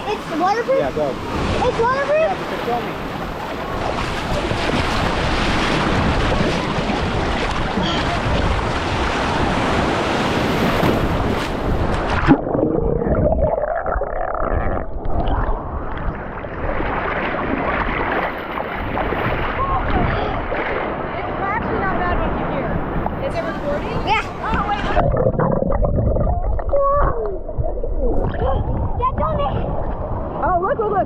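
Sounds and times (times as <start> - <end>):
ocean surf: 0.0 - 12.5, 15.3 - 25.0
rushing water: 0.0 - 31.0.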